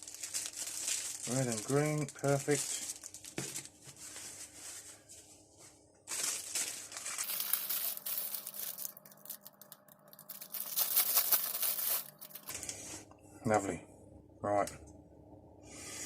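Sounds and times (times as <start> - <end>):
packaging crinkling and rustling: 0.0 - 5.1, 6.1 - 12.8.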